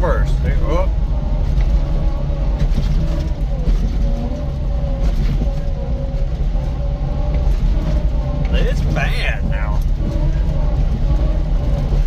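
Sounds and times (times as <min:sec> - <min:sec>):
vehicle juddering on dirt road: 0:00.0 - 0:12.0
vehicle whine: 0:00.0 - 0:12.0.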